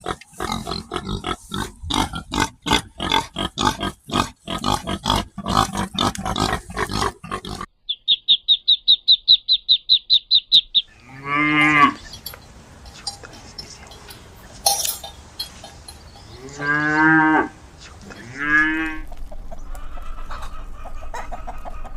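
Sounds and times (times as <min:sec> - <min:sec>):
rapid rhythmic animal grunting: 0:00.0 - 0:07.7, 0:10.9 - 0:16.8.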